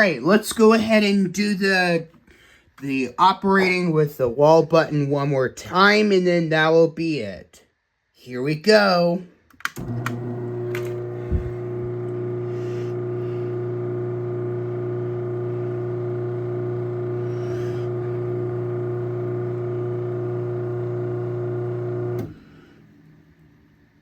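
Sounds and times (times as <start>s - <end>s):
garage door opener motor hum: 9.7s - 22.9s
low thump: 11.2s - 11.8s.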